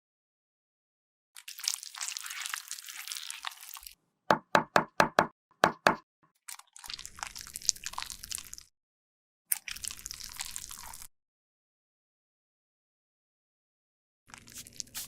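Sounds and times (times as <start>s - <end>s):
sharp knocks on hard surface: 4.3s - 6.0s.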